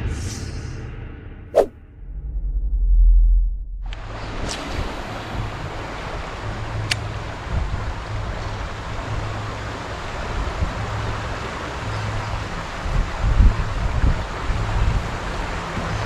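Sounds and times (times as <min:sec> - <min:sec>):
wind buffeting microphone: 0:12.8 - 0:15.2.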